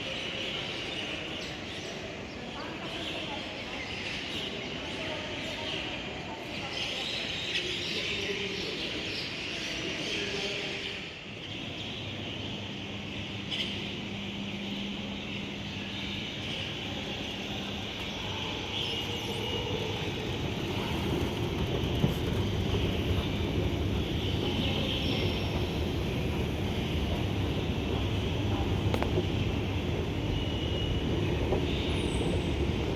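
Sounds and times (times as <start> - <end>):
train rumbling on tracks: 10.8 - 32.9.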